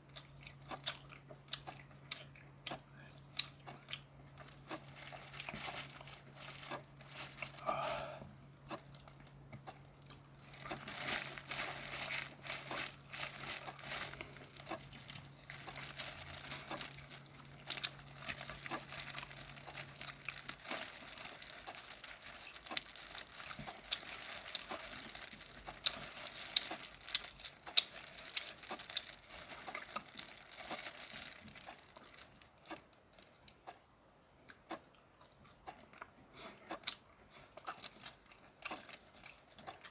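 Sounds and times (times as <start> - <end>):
faint low hum: 0.0 - 39.9
shrimp shells cracking and peeling: 8.7 - 33.5.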